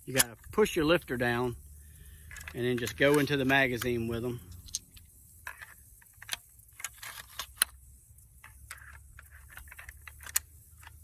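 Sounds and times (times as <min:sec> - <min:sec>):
shotgun shells loading with metallic clicks: 0:00.0 - 0:00.9, 0:02.0 - 0:07.8, 0:08.4 - 0:11.0
light metal scraping: 0:00.1 - 0:07.6.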